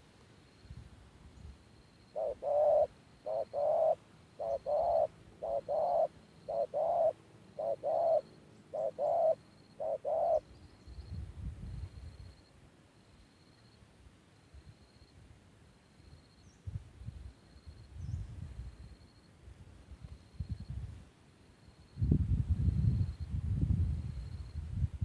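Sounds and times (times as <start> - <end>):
dove cooing: 2.2 - 10.4.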